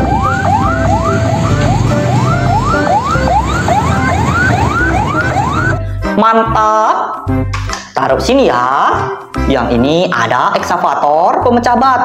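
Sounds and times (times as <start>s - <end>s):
electronic whooping siren: 0.0s - 5.8s.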